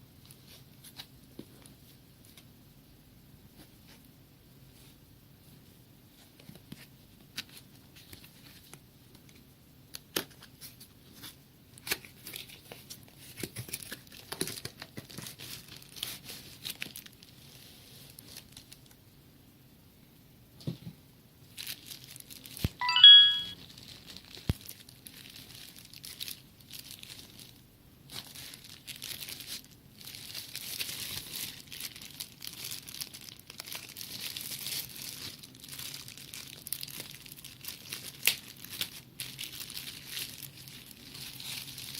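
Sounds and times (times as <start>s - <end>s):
packaging crinkling and tearing: 10.0s - 17.4s, 18.0s - 19.0s, 21.5s - 22.8s, 23.6s - 41.9s
brief ringing tone: 22.8s - 23.6s.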